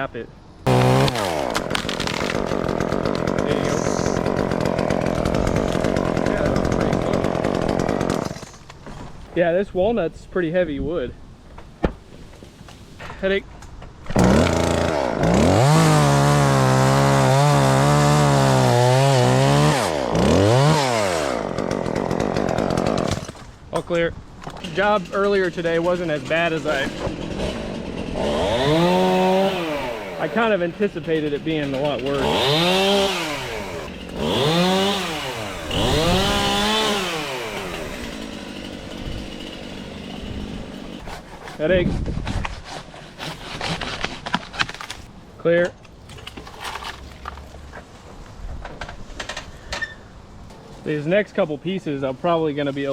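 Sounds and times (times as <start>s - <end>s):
chainsaw cutting and revving: 0.6s - 8.6s, 14.2s - 23.4s, 24.6s - 41.3s
chainsaw ticking idle: 0.7s - 8.5s, 14.2s - 23.2s, 25.0s - 41.0s.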